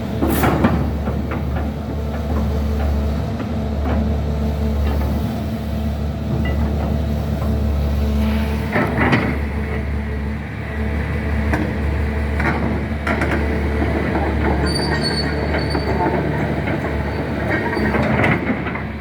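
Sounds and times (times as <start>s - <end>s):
excavator engine running: 0.0s - 19.0s
metallic squeals: 14.4s - 18.1s.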